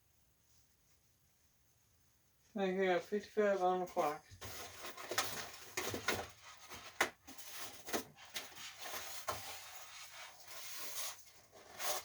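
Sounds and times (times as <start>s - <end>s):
handling rubbing and scraping: 3.8s - 12.0s.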